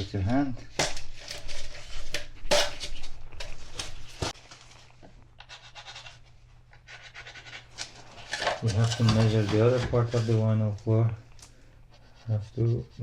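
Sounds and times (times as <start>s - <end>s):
rubbing and handling of plank: 6.9s - 10.7s.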